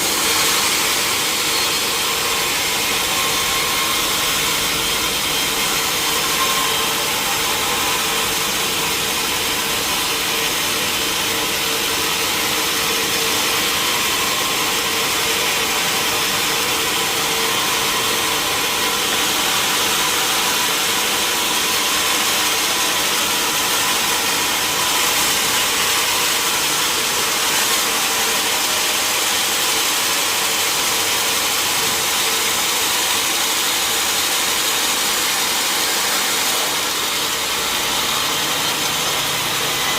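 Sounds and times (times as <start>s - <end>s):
saw cutting wood hiss: 0.0s - 39.9s
sawmill machine hum: 0.0s - 39.9s.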